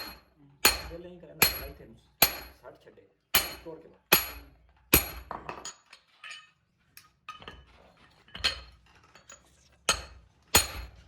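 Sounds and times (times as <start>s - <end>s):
hammer striking metal: 0.0s - 2.6s, 3.4s - 5.4s, 9.9s - 11.0s.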